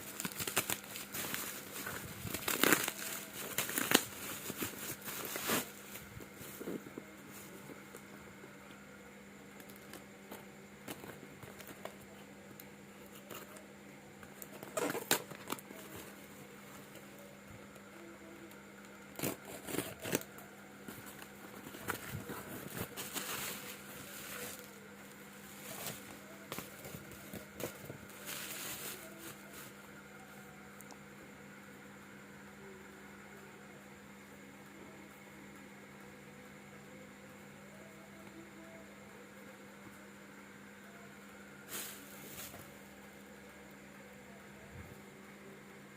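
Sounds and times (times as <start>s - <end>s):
plastic and cardboard crinkling: 0.0s - 7.8s, 19.2s - 24.8s, 25.4s - 29.8s
steady low hum: 0.0s - 45.9s.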